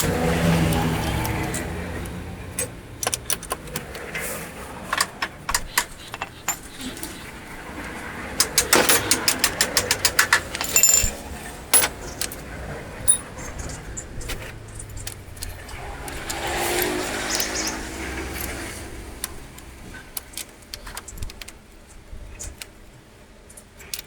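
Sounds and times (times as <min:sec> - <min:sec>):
metal tools clinking: 0:04.8 - 0:07.4, 0:08.4 - 0:15.6.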